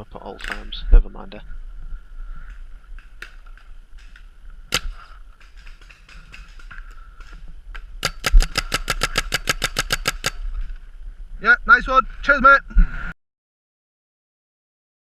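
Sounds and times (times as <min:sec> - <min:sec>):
paintball marker shots: 0:04.7 - 0:06.7, 0:08.0 - 0:10.4.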